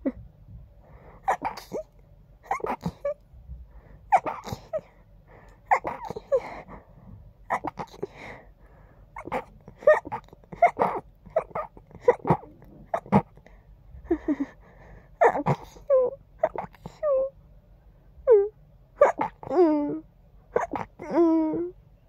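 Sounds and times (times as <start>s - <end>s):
stifled sneezes: 1.2s - 1.9s, 4.1s - 4.8s.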